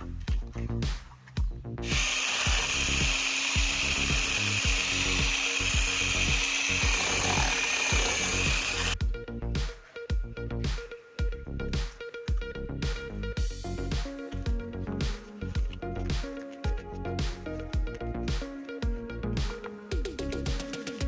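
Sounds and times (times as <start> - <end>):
background music with beat: 0.3 - 21.0
power tool whining: 1.8 - 9.0.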